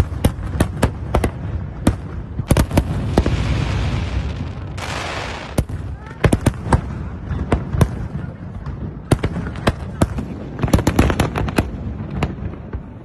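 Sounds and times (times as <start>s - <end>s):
fireworks sharp bangs: 0.0s - 13.0s
fireworks crackling hiss: 2.5s - 6.6s.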